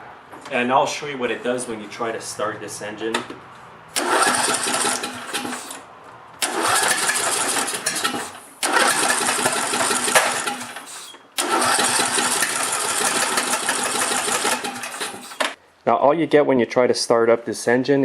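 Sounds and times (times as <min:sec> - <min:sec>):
engine cranking and sputtering: 0:03.9 - 0:15.6.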